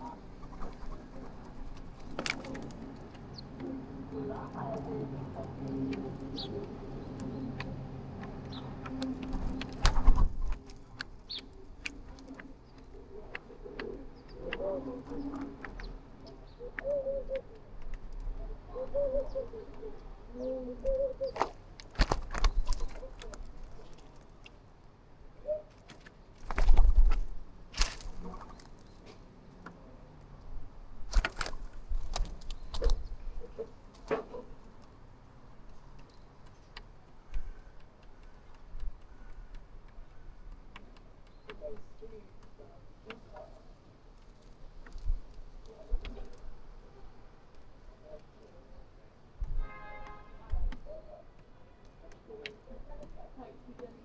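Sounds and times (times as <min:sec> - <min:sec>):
knocks and wing flutters: 0:00.0 - 0:15.8, 0:20.9 - 0:24.6, 0:25.8 - 0:29.2, 0:31.0 - 0:34.6
pigeons cooing: 0:00.0 - 0:24.3, 0:25.3 - 0:25.8, 0:31.0 - 0:35.0.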